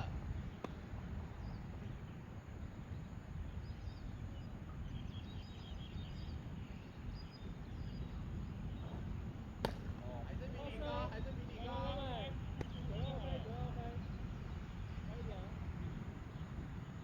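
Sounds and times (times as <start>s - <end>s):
low outdoor rumble: 0.0s - 17.0s
faint high chirping: 1.3s - 9.2s
sharp crack: 9.6s - 10.0s.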